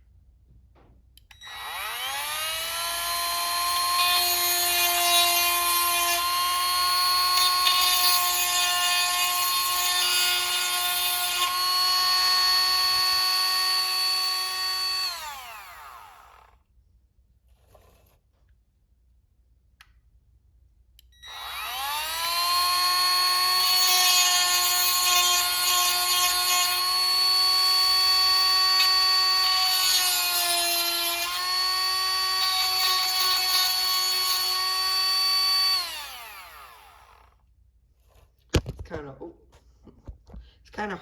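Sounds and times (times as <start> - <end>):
rotary tool grinding chain: 1.4 - 16.5, 21.3 - 37.4.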